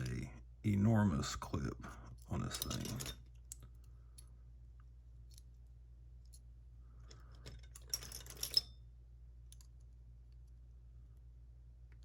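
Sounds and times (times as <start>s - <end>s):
metal lock clicks and clinks: 7.4s - 8.8s.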